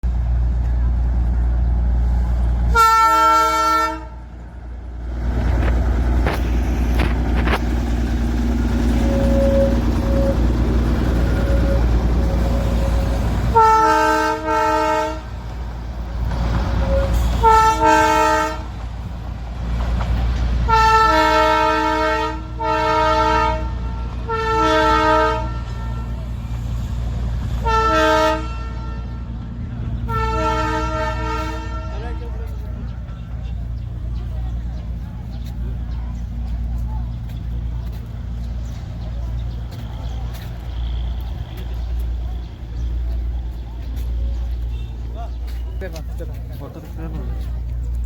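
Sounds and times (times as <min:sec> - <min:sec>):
low train rumble: 0:00.0 - 0:48.0
train horn toots: 0:02.7 - 0:04.4, 0:05.6 - 0:18.9, 0:20.6 - 0:33.3, 0:44.4 - 0:45.8.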